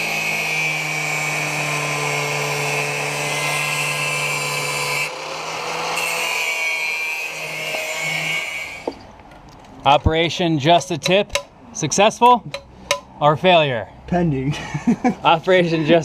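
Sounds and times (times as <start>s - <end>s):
power tool high whine: 0.0s - 9.0s.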